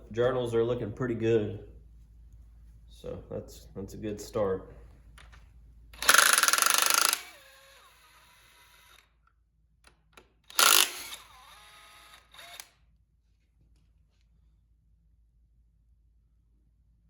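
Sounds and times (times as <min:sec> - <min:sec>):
impact wrench hammering: 0:06.0 - 0:07.5, 0:10.5 - 0:11.3
tool whine spinning down: 0:06.0 - 0:09.1, 0:10.5 - 0:12.7.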